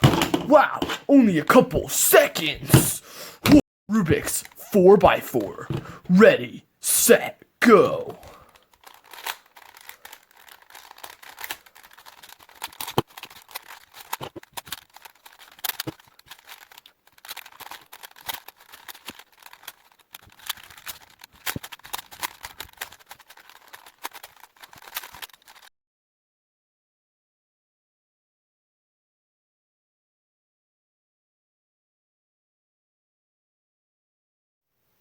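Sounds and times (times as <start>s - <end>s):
puzzle cube clicking as turned: 8.2s - 25.7s.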